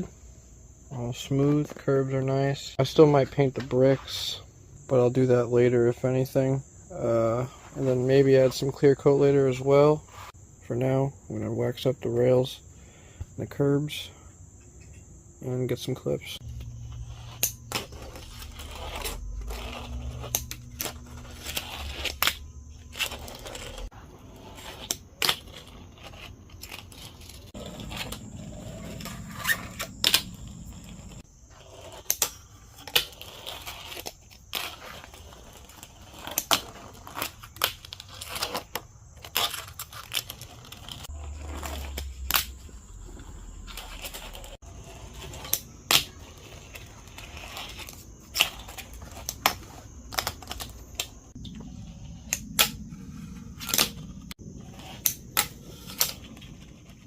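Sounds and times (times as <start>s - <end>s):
small wheels rolling: 16.4s - 57.0s.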